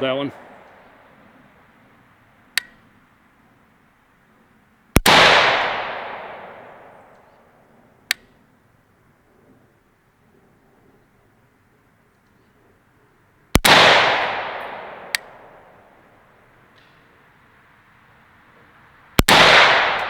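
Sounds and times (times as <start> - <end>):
rifle shots: 5.0 - 7.6, 13.5 - 16.0, 19.2 - 20.0
rolling echo of gunshot: 5.0 - 7.6, 13.5 - 16.0, 19.2 - 20.0.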